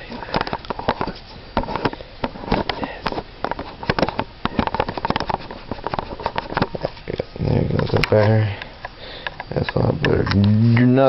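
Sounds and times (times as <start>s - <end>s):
camcorder handling clicks and scuffs: 0.3s - 6.9s.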